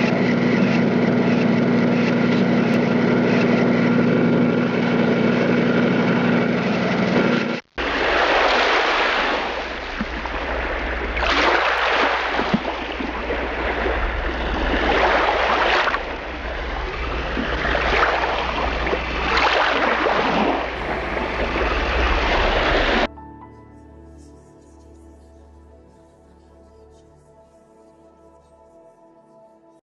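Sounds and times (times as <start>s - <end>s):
sea waves breaking: 0.0s - 23.1s
steady low rumble: 0.0s - 23.1s.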